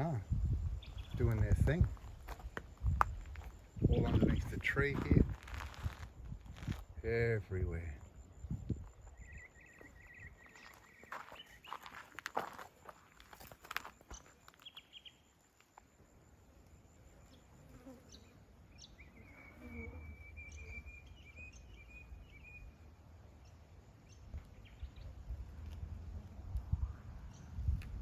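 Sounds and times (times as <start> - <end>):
high-pitched insect buzz: 16.8 - 21.9.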